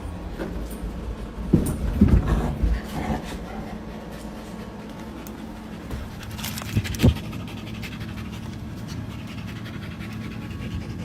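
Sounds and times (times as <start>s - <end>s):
animal panting: 2.5s - 11.0s.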